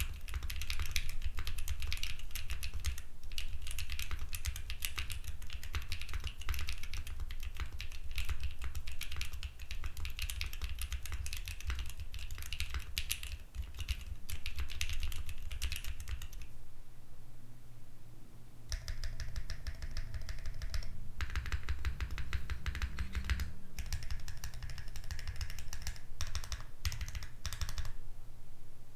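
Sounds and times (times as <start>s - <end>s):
mechanical keyboard typing: 0.0s - 16.5s, 18.7s - 28.0s.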